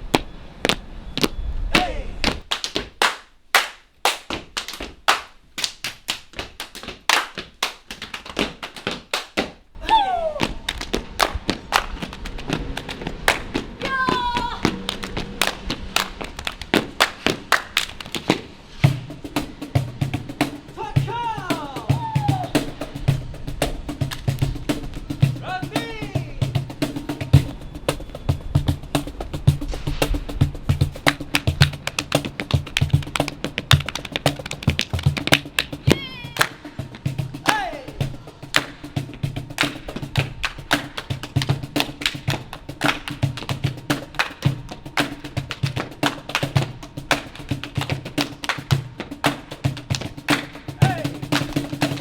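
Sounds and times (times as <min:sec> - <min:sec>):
hand claps and body slaps: 0:01.8 - 0:11.9, 0:30.8 - 0:35.8, 0:36.4 - 0:36.7, 0:39.6 - 0:44.4, 0:45.0 - 0:50.7.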